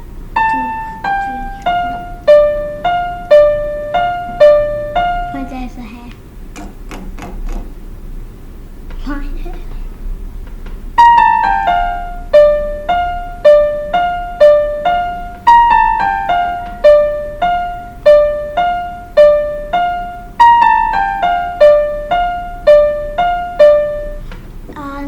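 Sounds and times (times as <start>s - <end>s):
electronic keyboard melody: 0.0s - 5.6s, 11.0s - 24.2s.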